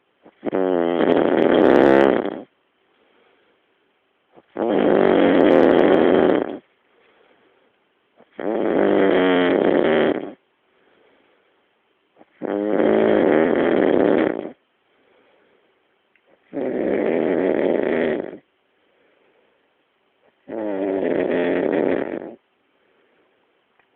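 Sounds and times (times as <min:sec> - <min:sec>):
man snoring loudly: 0:00.4 - 0:02.5, 0:04.5 - 0:06.6, 0:08.3 - 0:10.4, 0:12.3 - 0:14.6, 0:16.5 - 0:18.4, 0:20.4 - 0:22.4
faint breathing: 0:02.8 - 0:04.5, 0:06.6 - 0:08.0, 0:10.6 - 0:12.4, 0:14.8 - 0:16.5, 0:18.7 - 0:20.5, 0:22.6 - 0:23.7.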